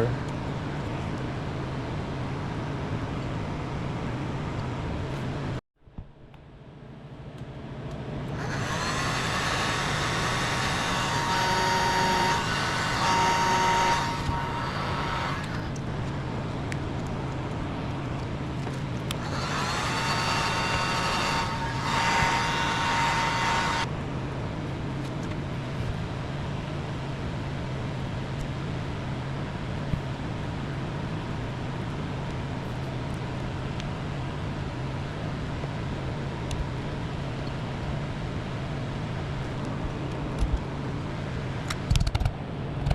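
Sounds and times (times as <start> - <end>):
heat gun humming: 8.4 - 15.8, 19.1 - 23.9.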